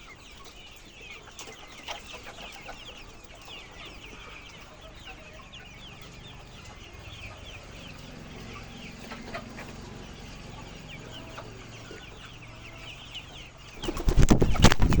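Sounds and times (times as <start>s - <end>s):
hens clucking: 0.0s - 15.0s
loud knocks and rattles: 13.8s - 15.0s.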